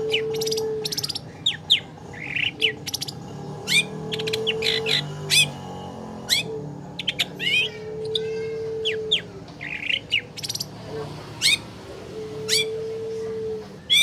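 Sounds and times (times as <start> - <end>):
bird harsh chatter: 0.0 - 5.6.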